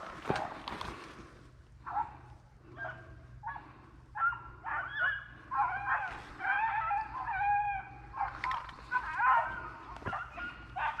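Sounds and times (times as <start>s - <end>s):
hounds baying: 0.0s - 0.7s, 1.8s - 11.0s.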